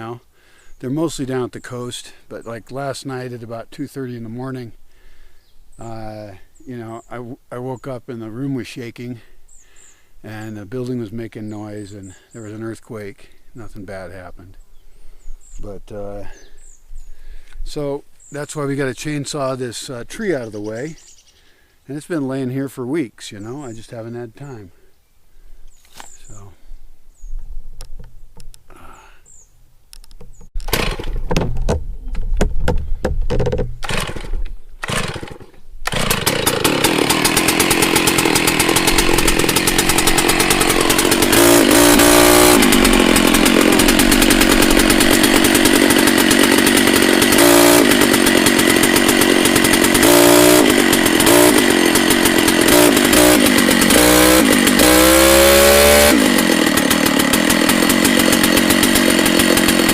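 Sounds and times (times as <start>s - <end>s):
chainsaw pull-starting and revving: 30.6s - 31.4s, 33.4s - 59.9s.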